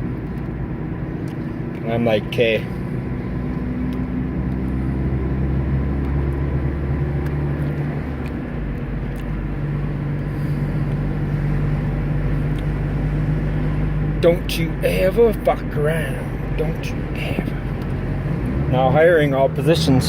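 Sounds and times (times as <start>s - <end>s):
car engine from inside cabin: 0.0s - 20.0s
road noise: 0.0s - 20.0s.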